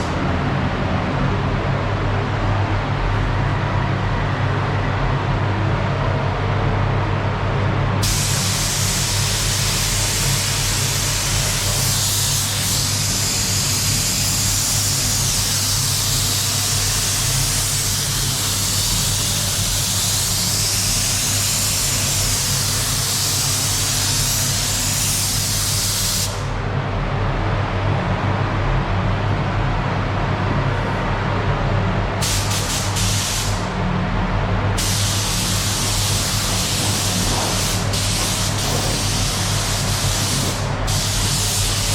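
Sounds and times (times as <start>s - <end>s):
steady low hum: 0.0s - 41.9s
paint spray gun hissing: 8.0s - 13.3s, 34.8s - 41.9s.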